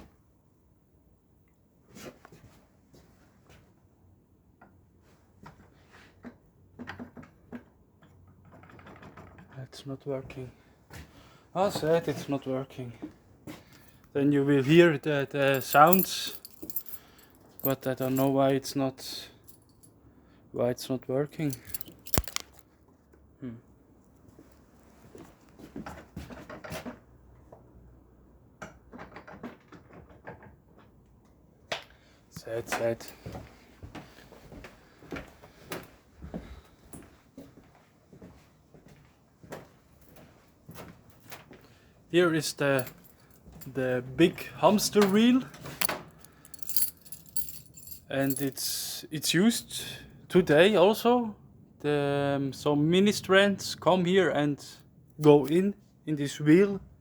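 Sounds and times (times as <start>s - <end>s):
light knocks and clicks of handling: 15.4s - 18.4s, 21.5s - 23.2s.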